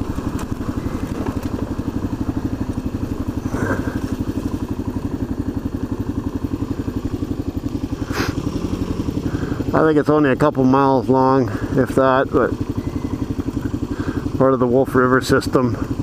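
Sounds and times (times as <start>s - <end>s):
motorcycle engine idling: 0.0s - 16.0s.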